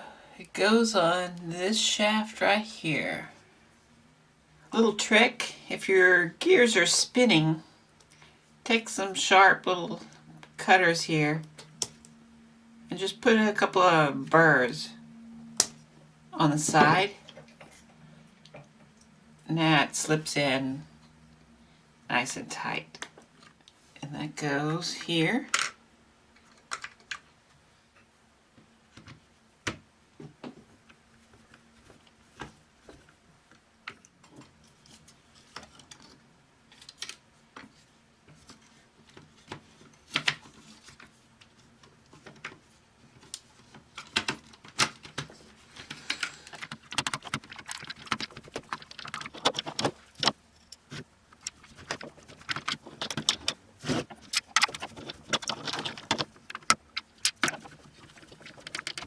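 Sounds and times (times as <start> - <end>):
plastic toy parts clicking and rattling: 26.4 - 27.2, 44.0 - 59.0.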